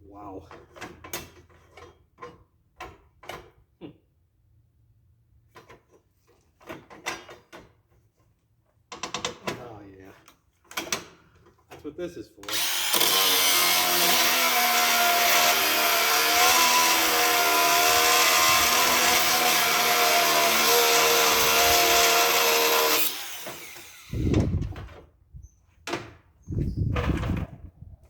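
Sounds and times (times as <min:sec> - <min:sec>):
handheld power tool running: 0:12.4 - 0:24.6.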